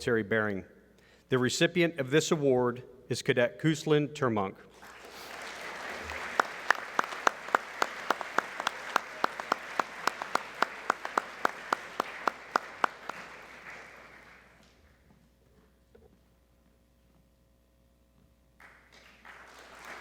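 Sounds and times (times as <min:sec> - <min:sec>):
audience applauding: 0:04.8 - 0:14.8, 0:18.6 - 0:20.0
person clapping loudly: 0:05.0 - 0:14.8, 0:18.6 - 0:20.0.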